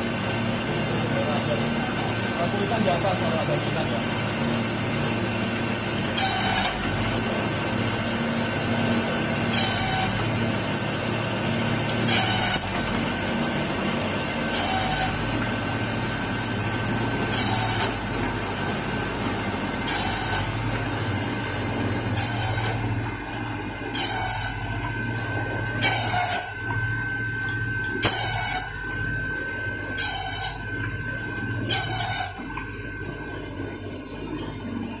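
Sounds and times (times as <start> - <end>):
machine motor hum: 0.0 - 35.0
blades cutting bamboo: 12.0 - 12.7, 14.5 - 15.2, 19.8 - 20.5, 25.8 - 26.5.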